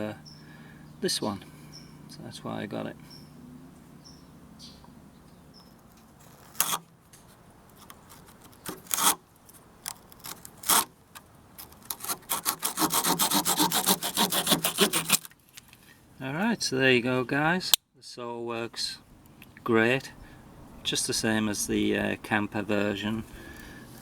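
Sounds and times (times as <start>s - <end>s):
small saw blade sawing: 6.2s - 6.9s, 7.8s - 9.2s, 9.8s - 10.9s, 11.6s - 15.3s.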